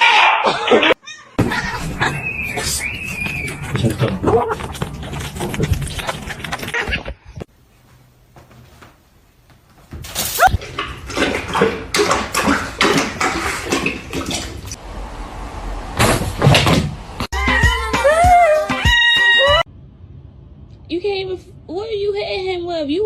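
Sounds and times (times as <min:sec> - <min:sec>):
knocks rattles and scrapes: 0:10.0 - 0:14.8.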